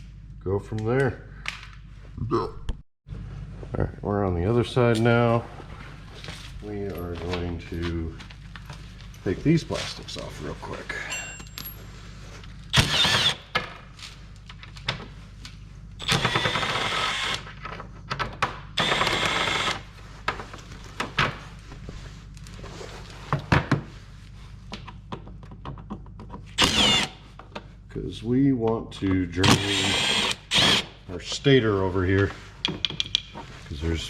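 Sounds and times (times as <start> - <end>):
cordless drill whining: 12.7 - 13.5, 16.0 - 17.4, 18.8 - 19.8, 26.6 - 27.2, 29.4 - 30.9.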